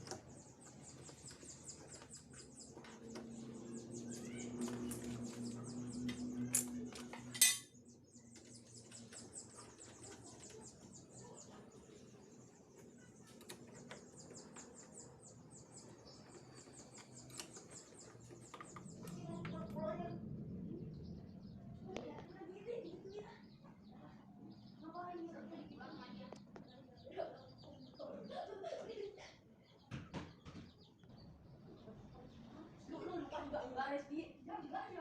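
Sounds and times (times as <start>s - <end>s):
small birds chirping: 0.0s - 35.0s
steady low hum: 13.8s - 27.4s.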